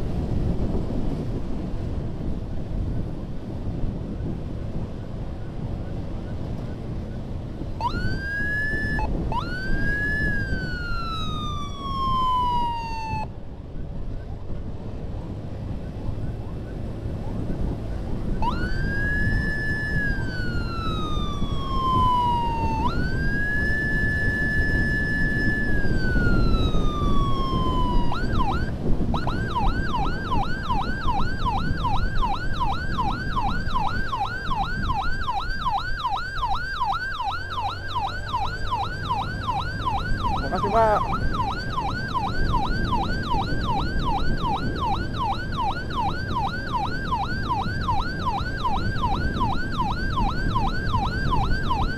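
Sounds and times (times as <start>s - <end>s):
engine and road rumble: 0.0s - 51.9s
ambulance siren wailing: 4.2s - 51.9s
siren fast yelp: 7.8s - 13.3s, 16.0s - 51.9s.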